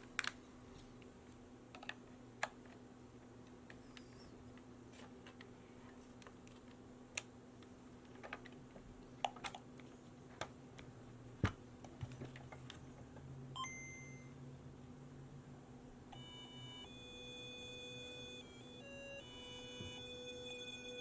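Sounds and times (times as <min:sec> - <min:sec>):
plastic parts clicking and tapping: 0:00.0 - 0:00.4, 0:01.7 - 0:02.8, 0:08.1 - 0:08.6, 0:09.2 - 0:10.6.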